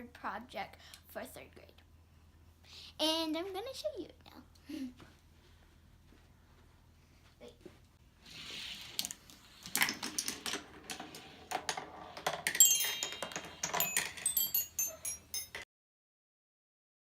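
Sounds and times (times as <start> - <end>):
marbles clicking and knocking: 8.9 - 15.6
toy xylophone notes: 12.5 - 15.6.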